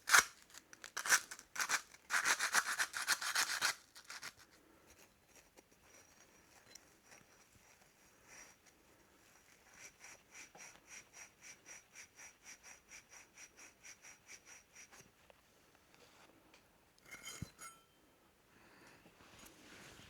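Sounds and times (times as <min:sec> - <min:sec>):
sandpaper rubbing on metal: 0:01.1 - 0:04.4.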